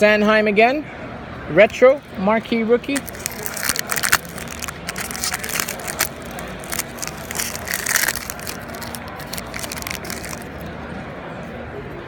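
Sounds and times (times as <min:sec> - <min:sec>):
foil wrappers crinkling: 0:02.9 - 0:10.7.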